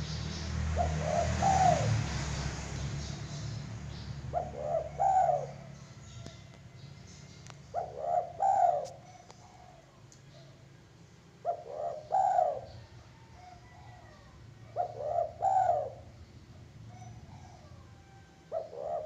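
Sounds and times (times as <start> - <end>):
dove cooing: 0.7 - 2.0, 4.3 - 6.4, 7.7 - 10.6, 11.4 - 19.0.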